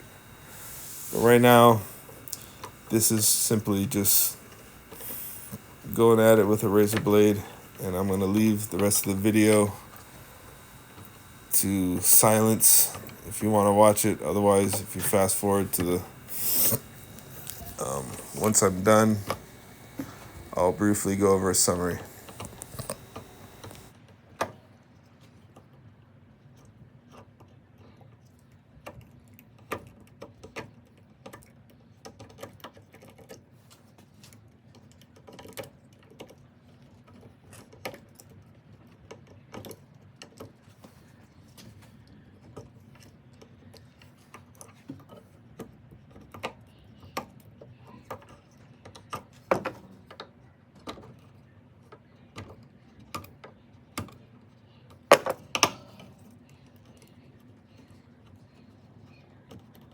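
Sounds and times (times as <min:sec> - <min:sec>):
steady low hum: 0:00.0 - 0:23.9.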